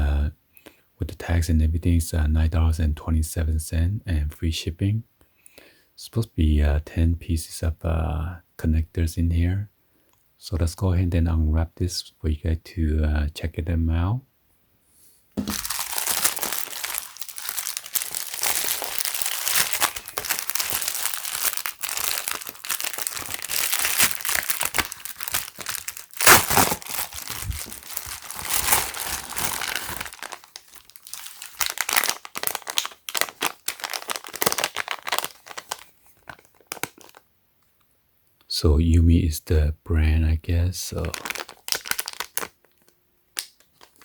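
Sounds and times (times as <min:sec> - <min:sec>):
packaging crinkling and tearing: 0:15.4 - 0:37.2, 0:40.9 - 0:44.0.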